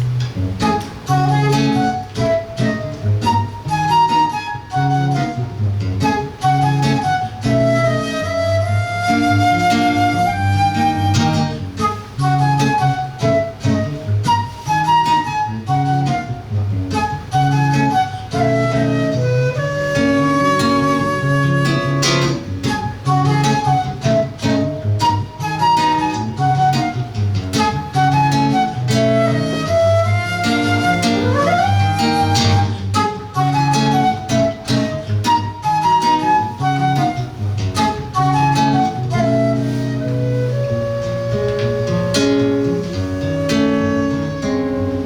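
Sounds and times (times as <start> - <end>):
plucked guitar chords and bass: 0.0 - 4.0, 15.6 - 35.8, 36.5 - 45.0
flute melody: 0.0 - 45.0.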